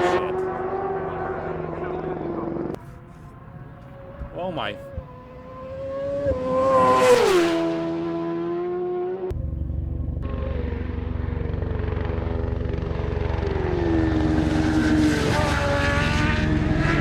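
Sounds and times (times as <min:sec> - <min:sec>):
motorcycle passing at speed: 0:00.0 - 0:09.5, 0:10.2 - 0:17.0
low pulsing drone: 0:07.5 - 0:17.0.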